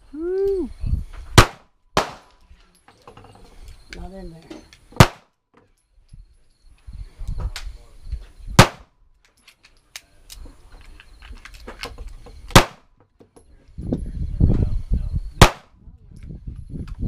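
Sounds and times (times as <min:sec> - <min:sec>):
gunshots: 0:01.4 - 0:02.3, 0:05.0 - 0:05.3, 0:08.6 - 0:08.9, 0:12.5 - 0:12.8, 0:15.4 - 0:15.7.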